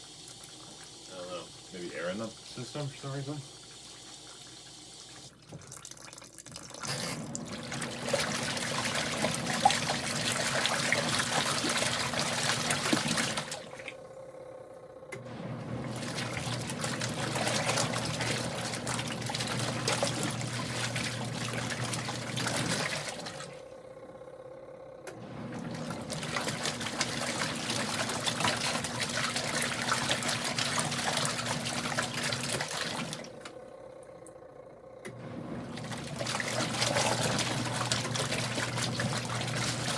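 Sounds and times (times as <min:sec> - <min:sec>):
washing machine motor humming: 0:00.0 - 0:39.9
water sloshing: 0:05.3 - 0:14.2, 0:15.2 - 0:23.7, 0:25.2 - 0:34.4, 0:35.2 - 0:39.9.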